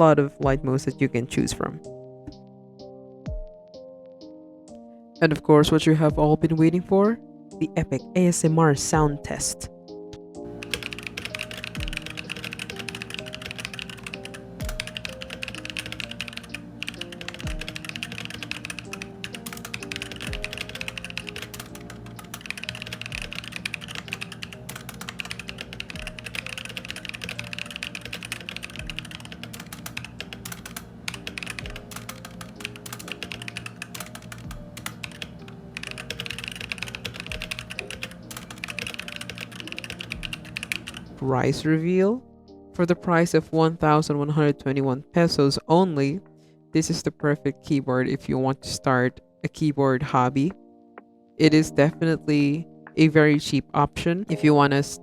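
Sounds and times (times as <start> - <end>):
soft background music: 0.0 - 55.0
mechanical keyboard typing: 10.5 - 41.2.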